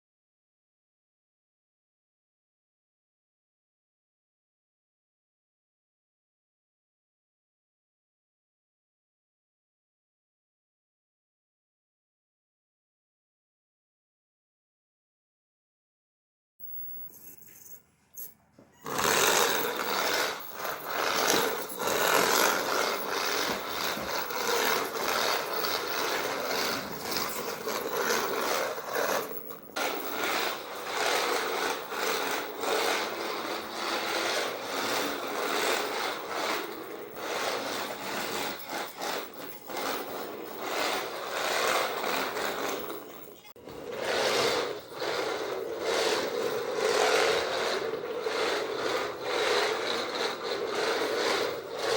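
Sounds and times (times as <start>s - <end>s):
small electric motor whirring: 18.8s - 51.9s.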